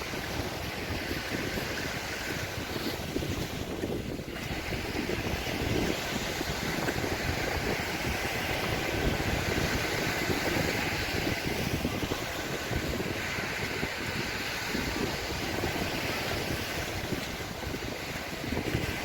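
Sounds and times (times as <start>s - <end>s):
sea surf: 0.0s - 19.0s
wind buffeting microphone: 0.0s - 19.0s.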